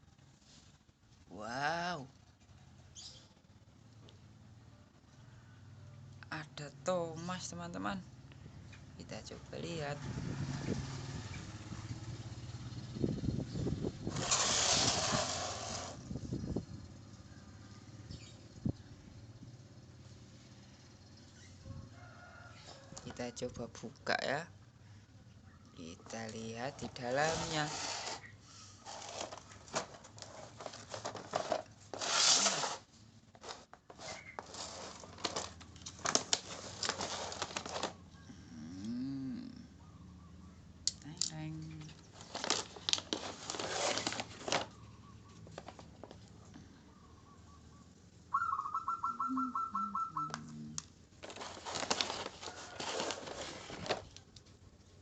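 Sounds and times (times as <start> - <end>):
packaging rustling and crackling: 28.8 - 38.0, 42.0 - 44.8, 45.4 - 46.3, 51.2 - 54.5
packaging tearing: 28.8 - 38.0, 42.2 - 44.7, 51.2 - 54.2
bird trilled call: 46.9 - 50.5.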